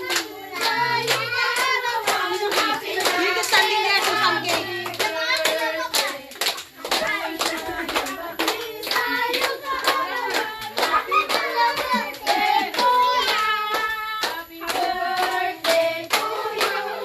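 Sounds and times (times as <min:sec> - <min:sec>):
group singing a celebration song: 0:00.0 - 0:17.0
people clapping along: 0:00.0 - 0:17.0.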